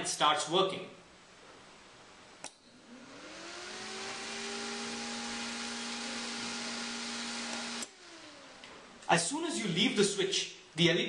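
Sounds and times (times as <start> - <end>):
small fan motor whine: 2.4 - 9.0.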